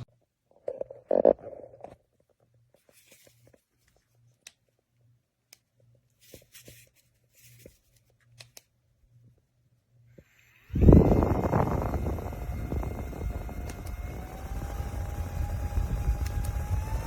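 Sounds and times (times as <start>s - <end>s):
faint clicks and rustles: 0.5s - 8.7s.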